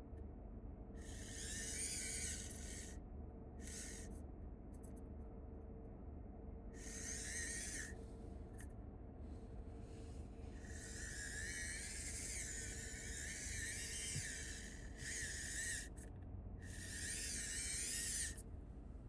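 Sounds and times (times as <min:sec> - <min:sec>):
electric motor and gears whining: 0:01.0 - 0:02.9, 0:03.6 - 0:04.1, 0:06.8 - 0:08.0, 0:10.6 - 0:18.5.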